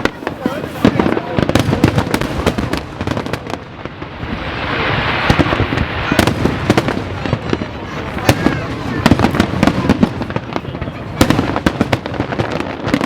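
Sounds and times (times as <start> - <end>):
hissing crackle: 0.0 - 13.0.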